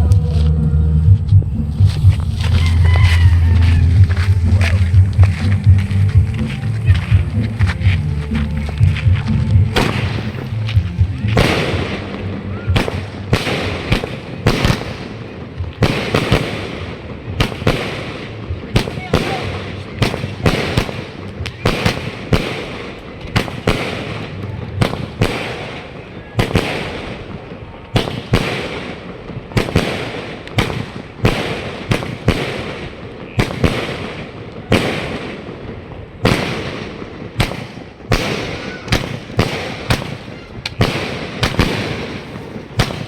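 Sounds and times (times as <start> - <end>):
fireworks bangs: 1.5 - 43.0.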